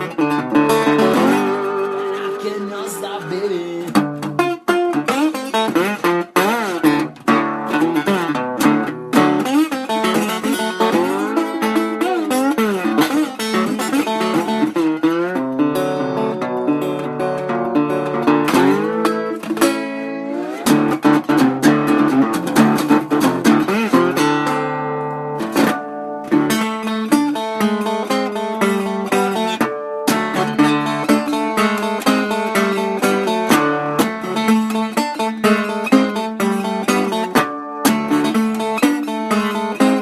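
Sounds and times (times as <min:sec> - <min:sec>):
acoustic slide guitar blues: 0:00.0 - 0:40.0.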